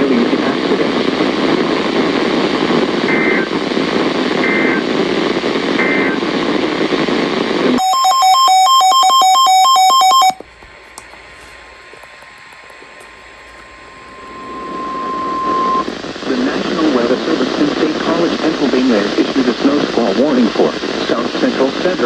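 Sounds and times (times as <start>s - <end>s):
radio static: 0.0s - 10.4s, 11.2s - 22.0s
two-pitch electronic beeping: 13.8s - 15.9s.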